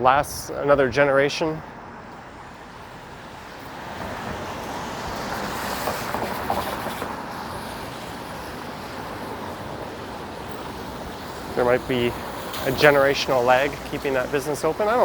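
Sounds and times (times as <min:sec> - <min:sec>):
street traffic wash: 0:00.0 - 0:15.0
tyre hiss on wet pavement: 0:04.4 - 0:15.0.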